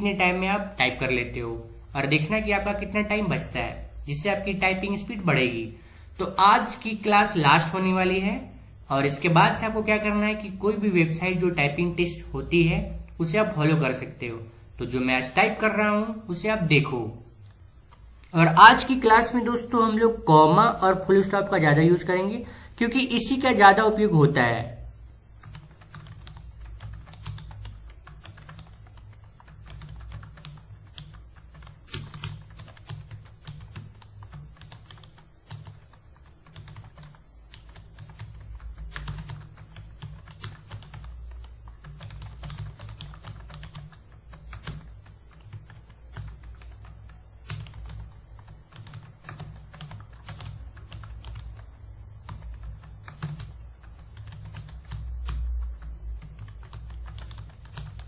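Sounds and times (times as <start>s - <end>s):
typing on computer keyboard: 25.0s - 58.0s.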